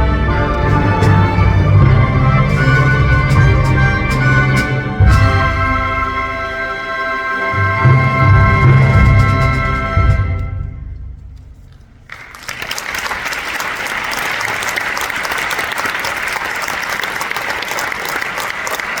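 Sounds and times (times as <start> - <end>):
audience applause: 12.1 - 19.0.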